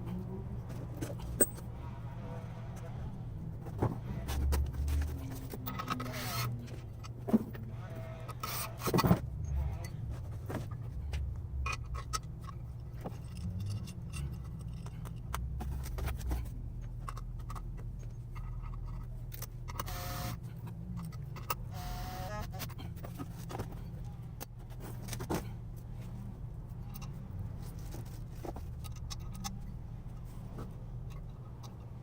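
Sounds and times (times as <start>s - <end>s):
steady low hum: 0.0s - 32.0s
metallic clicks and rattles: 11.5s - 19.9s.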